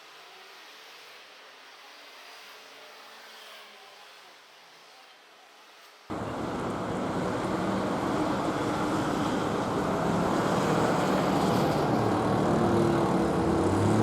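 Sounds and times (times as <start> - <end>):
road and wind noise: 6.1 - 14.0
vehicle engine running: 6.1 - 14.0.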